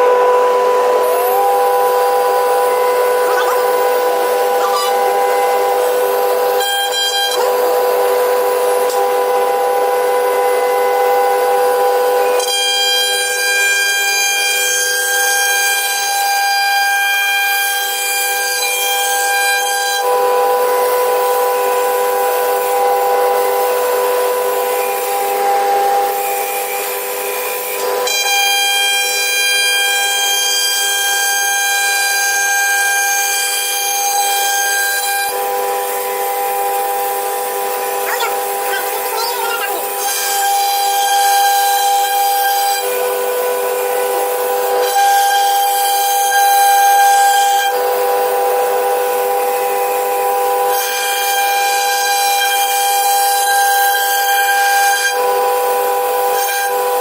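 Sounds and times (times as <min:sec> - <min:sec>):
router spindle whining: 0:00.0 - 0:12.5, 0:20.0 - 0:30.2, 0:30.8 - 0:50.7.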